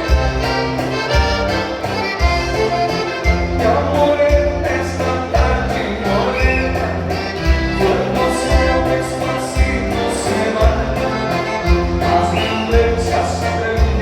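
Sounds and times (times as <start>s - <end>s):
singing over a bass beat: 3.4s - 14.0s.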